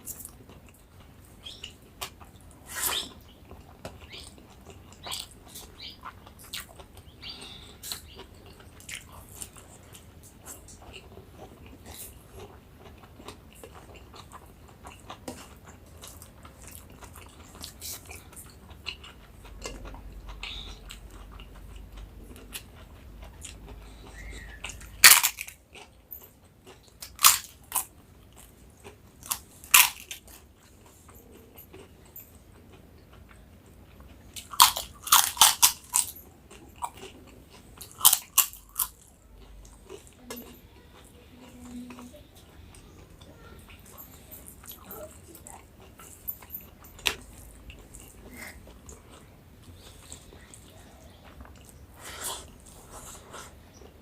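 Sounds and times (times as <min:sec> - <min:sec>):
soft chewing: 0:00.0 - 0:54.0
loud sharp crunches: 0:25.0 - 0:25.5.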